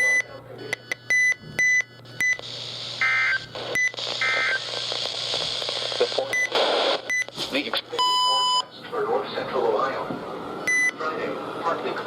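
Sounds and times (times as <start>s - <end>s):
static hiss: 2.4s - 7.8s
short electronic beeps: 10.7s - 11.0s.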